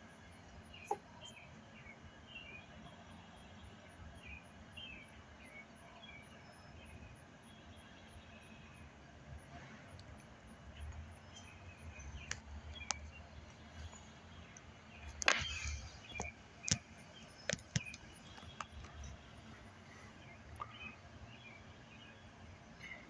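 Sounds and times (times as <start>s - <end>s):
sharp clicks: 14.6s - 19.1s.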